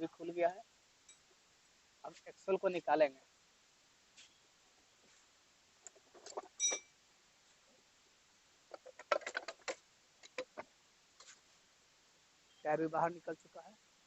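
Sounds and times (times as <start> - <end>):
metal clinks and knocks: 5.9 - 6.9.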